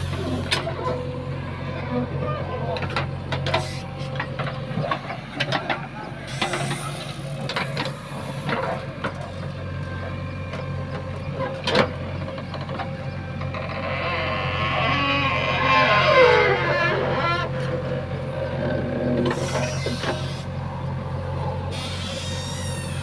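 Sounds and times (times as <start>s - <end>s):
diesel engine running: 0.0s - 23.0s
clanks and knocks: 10.5s - 14.4s.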